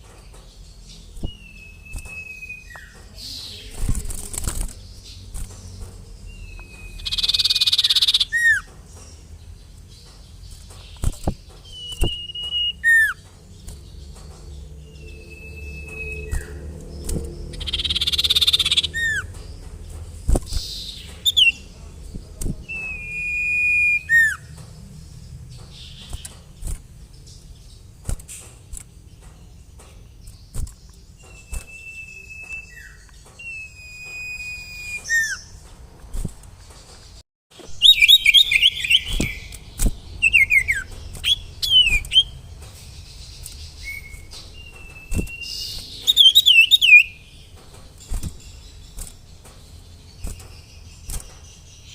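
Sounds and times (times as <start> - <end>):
bird chattering notes: 1.0 - 9.1, 14.5 - 24.6
bird whistling calls: 1.2 - 3.7, 6.3 - 8.7, 11.0 - 13.2, 14.9 - 19.3, 22.6 - 24.5, 31.2 - 35.6, 37.7 - 39.6, 40.2 - 42.3, 43.8 - 47.3
harsh raspy bird calls: 15.3 - 19.4.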